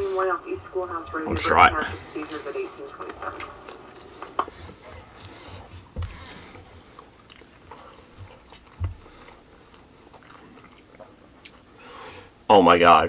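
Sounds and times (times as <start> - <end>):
person biting and chewing: 7.0 - 11.7
low thumps: 8.2 - 9.2.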